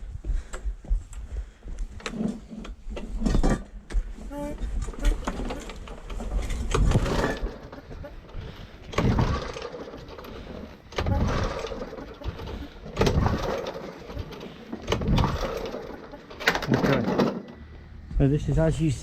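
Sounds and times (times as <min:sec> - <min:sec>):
engine turning over: 0:04.8 - 0:17.8
recoil starter pulled: 0:04.9 - 0:17.5.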